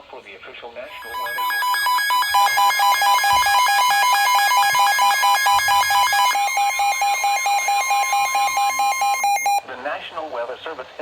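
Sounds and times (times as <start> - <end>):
rapid harsh electronic beeping: 0.9 - 9.6
steady electronic tone: 0.9 - 9.6.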